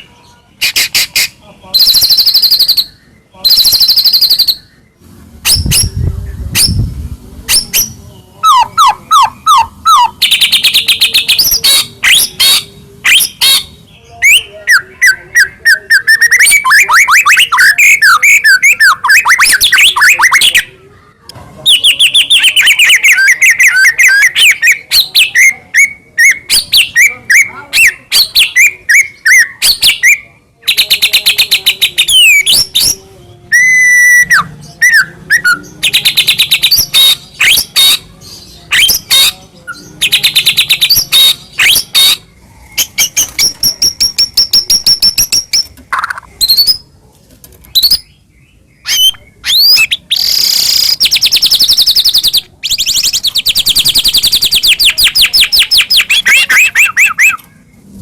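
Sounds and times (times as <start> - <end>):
bird singing trills and whistles: 0.0 - 6.9, 7.5 - 20.7, 21.7 - 46.8, 47.7 - 57.6.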